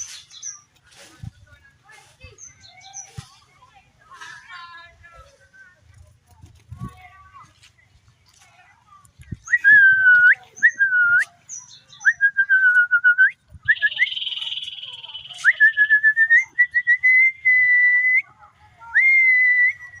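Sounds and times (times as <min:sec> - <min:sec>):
bird whistling: 0:09.4 - 0:18.1.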